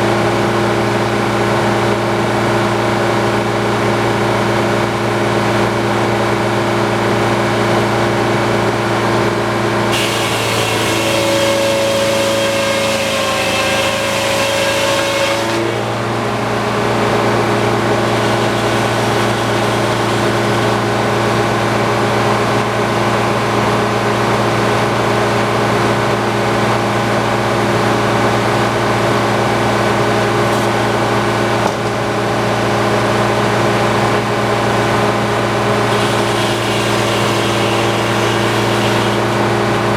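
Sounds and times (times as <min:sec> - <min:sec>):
sawmill engine running: 0:00.0 - 0:39.9
saw blade cutting log: 0:09.9 - 0:22.7, 0:29.7 - 0:32.2, 0:34.0 - 0:39.8.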